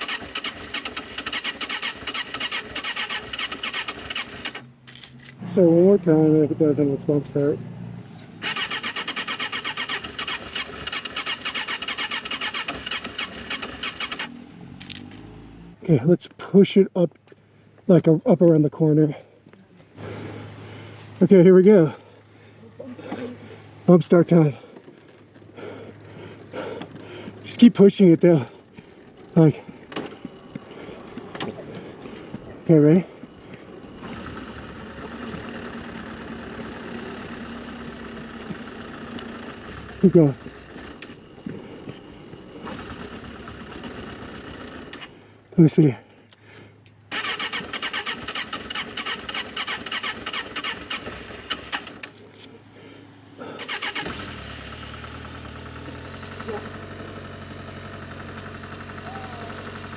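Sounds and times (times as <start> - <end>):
motorcycle starter cranking engine: 0.0 - 5.7, 8.4 - 15.4, 23.0 - 45.4, 47.1 - 52.5, 53.4 - 59.9.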